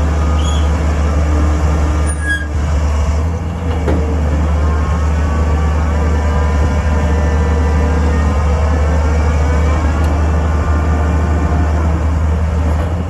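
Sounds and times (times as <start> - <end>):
engine droning: 0.0 - 13.0
short high squeak: 0.4 - 0.7, 2.1 - 2.6.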